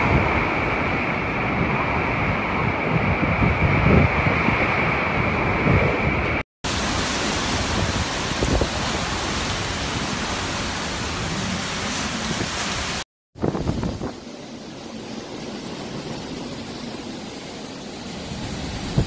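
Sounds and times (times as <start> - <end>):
gusty storm wind: 0.0 - 19.0
heavy rain: 6.6 - 19.0.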